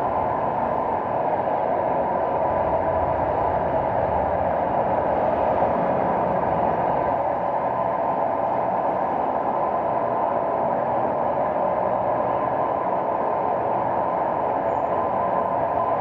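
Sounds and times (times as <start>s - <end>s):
city traffic rumble: 0.0s - 16.0s.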